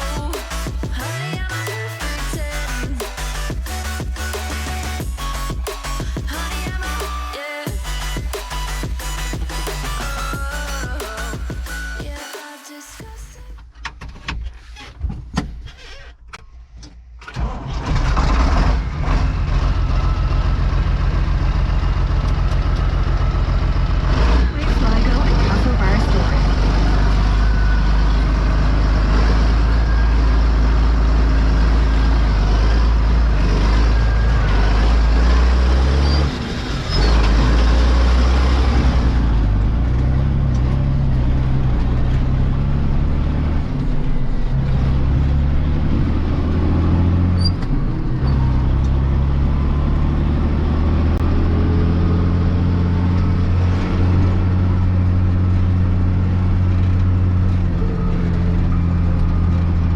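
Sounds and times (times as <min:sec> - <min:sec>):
heavy diesel machinery engines: 0:17.7 - 0:59.9.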